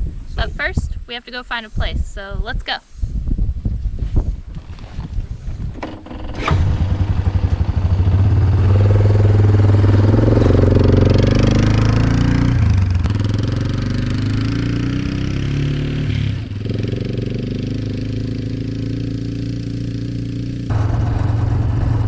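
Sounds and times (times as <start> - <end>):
vehicle engine revving: 5.8 - 22.0.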